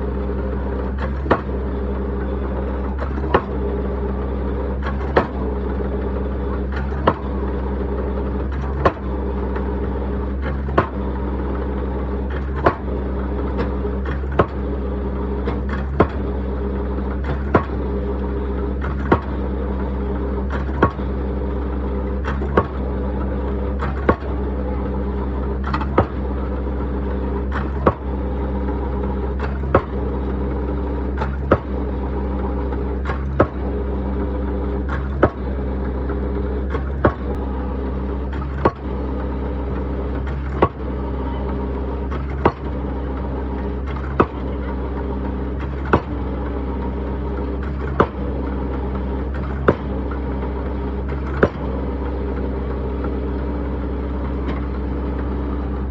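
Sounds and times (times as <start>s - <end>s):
diesel engine running: 0.0s - 55.9s
hammer striking concrete: 3.2s - 3.6s, 6.9s - 7.4s, 12.6s - 13.0s, 13.6s - 14.7s, 15.5s - 16.3s, 17.4s - 17.9s, 19.1s - 19.4s, 20.7s - 21.1s, 31.5s - 31.8s, 33.2s - 33.6s, 35.0s - 35.5s, 36.8s - 37.4s, 38.4s - 39.0s, 42.4s - 42.8s, 44.0s - 44.6s, 45.9s - 46.2s, 47.9s - 48.3s, 49.7s - 50.0s, 51.4s - 51.7s.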